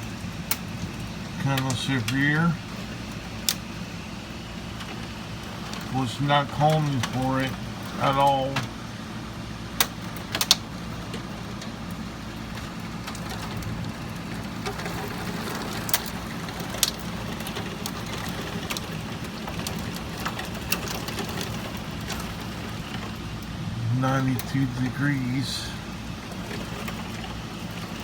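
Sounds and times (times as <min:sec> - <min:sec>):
sharp raindrops ticking: 0:00.0 - 0:28.0
steady heavy rain: 0:00.0 - 0:28.0
low steady hum: 0:16.6 - 0:28.0.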